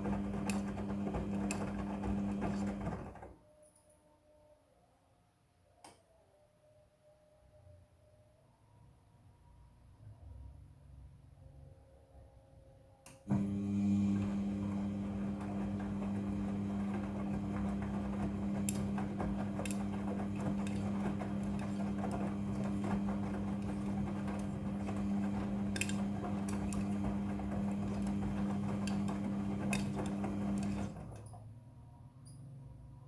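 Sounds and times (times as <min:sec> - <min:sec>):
washing machine motor hum: 0:00.0 - 0:03.3, 0:13.3 - 0:31.4.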